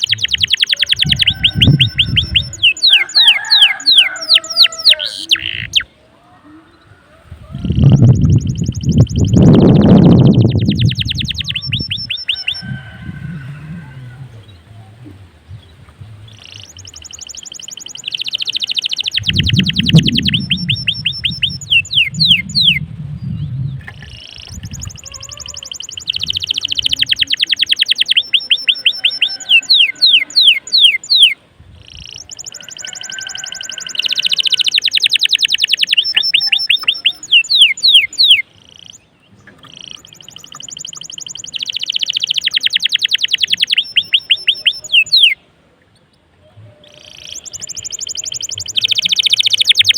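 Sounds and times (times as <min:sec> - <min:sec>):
canary singing trills: 0:00.0 - 0:06.0, 0:06.6 - 0:45.4, 0:46.4 - 0:49.9.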